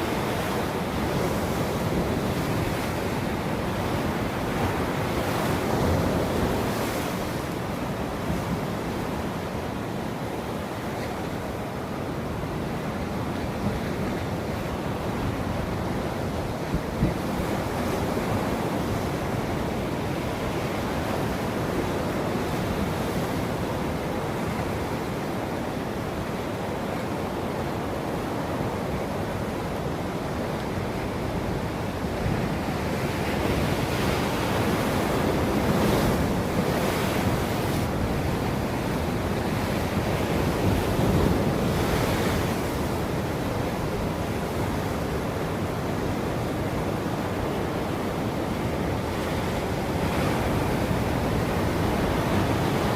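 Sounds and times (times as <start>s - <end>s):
ocean waves breaking: 27.5s - 52.9s.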